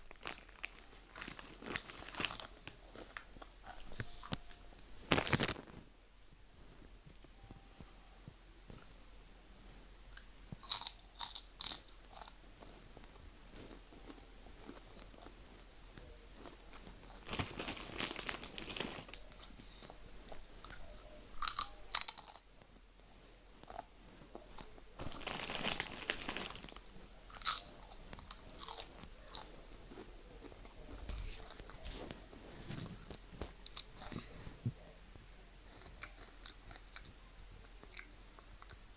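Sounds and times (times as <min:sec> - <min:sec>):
crunchy food being chewed: 0:10.1 - 0:22.9, 0:23.6 - 0:34.5, 0:35.6 - 0:38.8.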